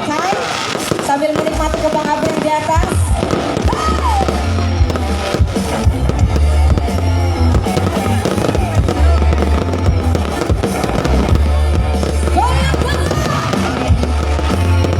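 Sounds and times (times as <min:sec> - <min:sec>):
fireworks banging and crackling: 0:00.0 - 0:14.9
song with heavy bass beat: 0:01.6 - 0:14.9.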